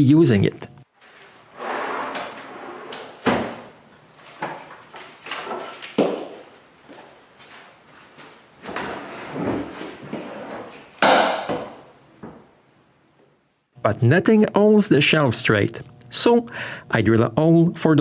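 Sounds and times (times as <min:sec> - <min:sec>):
wooden shelf scraping and sliding: 0:01.0 - 0:04.7, 0:08.6 - 0:10.9.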